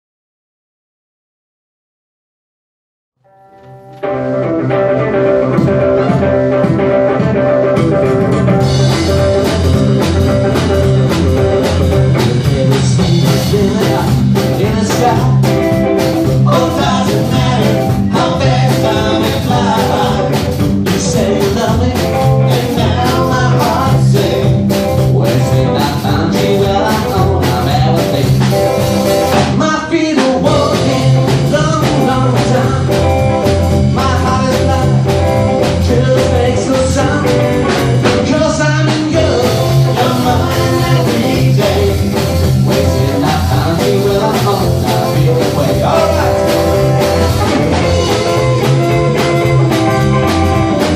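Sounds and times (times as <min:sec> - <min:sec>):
rockabilly band playing: 0:03.3 - 0:50.9
man singing: 0:04.7 - 0:50.9.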